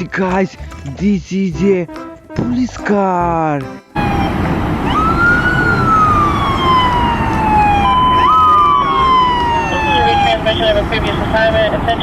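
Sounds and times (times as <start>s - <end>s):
police siren wailing: 4.0s - 12.0s
steady low rumble: 4.0s - 12.0s.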